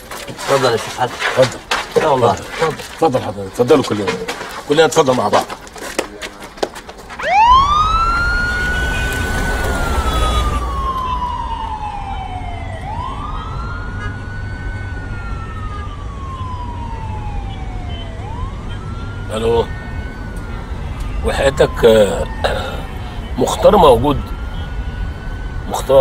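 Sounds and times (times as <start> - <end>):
police siren wailing: 7.1 - 26.0.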